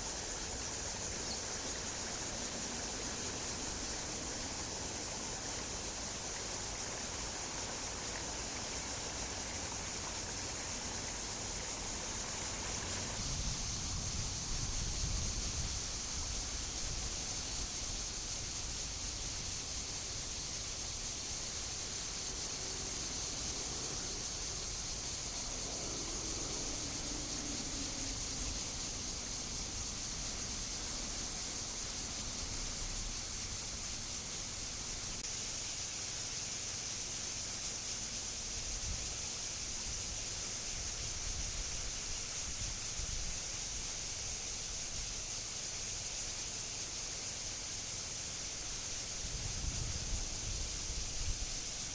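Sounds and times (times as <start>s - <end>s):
cicadas droning: 0.0s - 51.9s.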